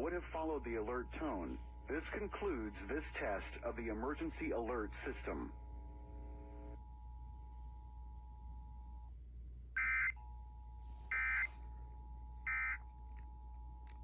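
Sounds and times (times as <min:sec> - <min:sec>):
buzzy digital data bursts: 0:11.1 - 0:11.5, 0:12.5 - 0:12.8.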